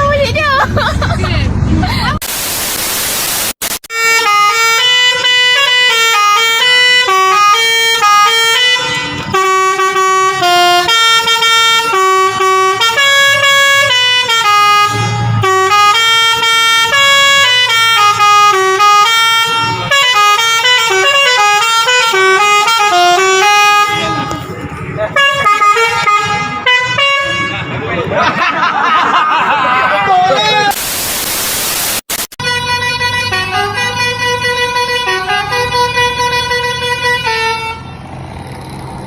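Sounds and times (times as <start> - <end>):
multi-tone air horn tune: 3.1 - 24.6, 25.2 - 27.7, 30.5 - 37.9.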